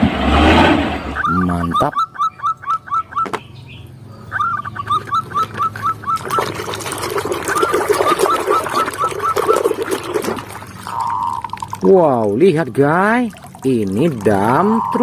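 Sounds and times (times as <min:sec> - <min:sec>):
bird chirping: 0:01.0 - 0:06.6, 0:07.4 - 0:10.2, 0:10.8 - 0:12.0, 0:13.7 - 0:15.0
water running: 0:05.0 - 0:15.0.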